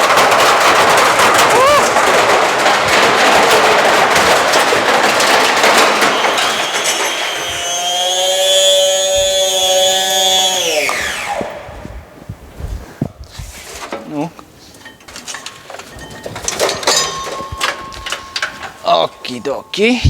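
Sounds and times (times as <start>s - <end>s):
washing machine drum banging: 0.0s - 9.4s, 14.9s - 20.0s
washing machine motor whine: 5.7s - 12.2s.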